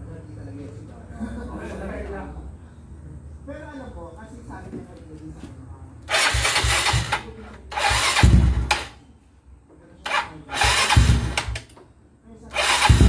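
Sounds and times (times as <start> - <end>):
scooter engine revving: 6.1 - 8.9, 10.1 - 11.7, 12.5 - 13.0.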